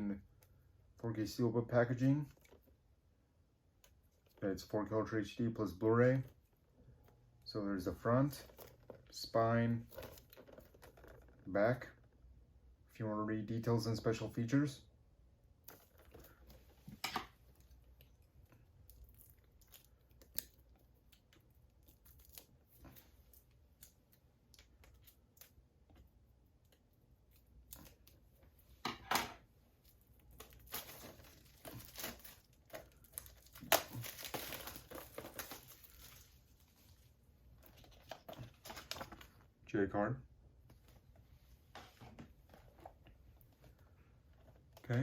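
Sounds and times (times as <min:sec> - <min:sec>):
plastic crinkling: 0:09.8 - 0:11.5, 0:29.8 - 0:39.4
plastic tearing: 0:09.8 - 0:11.5, 0:29.9 - 0:36.4.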